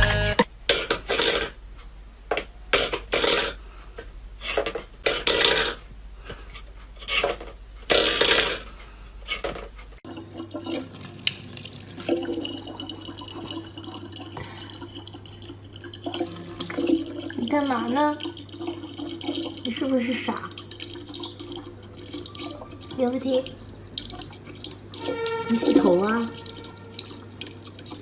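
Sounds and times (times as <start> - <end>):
running water: 10.0 - 28.0
water splashing in a sink: 10.0 - 28.0
low hum: 12.3 - 19.7.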